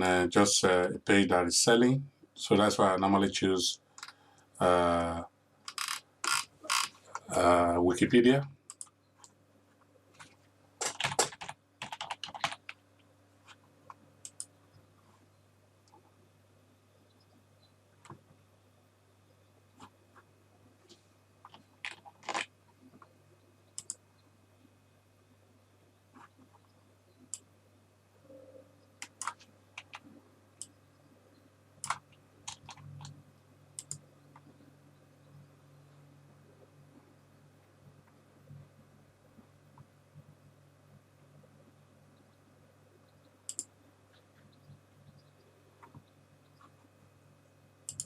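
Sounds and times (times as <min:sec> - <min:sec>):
faint steady low hum: 0:00.0 - 0:48.0
computer mouse and keyboard clicks: 0:05.7 - 0:07.3, 0:10.2 - 0:12.8, 0:13.5 - 0:14.5, 0:20.9 - 0:23.1, 0:23.8 - 0:24.0, 0:29.0 - 0:30.8, 0:31.8 - 0:33.2, 0:33.8 - 0:34.5, 0:43.5 - 0:46.8
typing on computer keyboard: 0:10.8 - 0:12.8, 0:29.0 - 0:30.0, 0:31.8 - 0:33.2.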